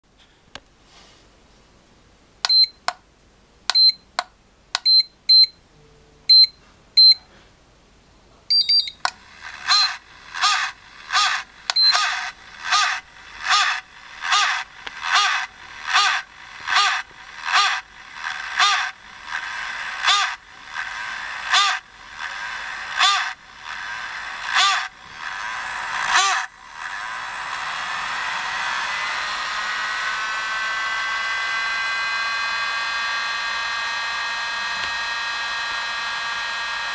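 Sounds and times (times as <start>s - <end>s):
high electronic beeps: 8.5s - 9.1s
cooling fan whirring: 8.8s - 36.9s.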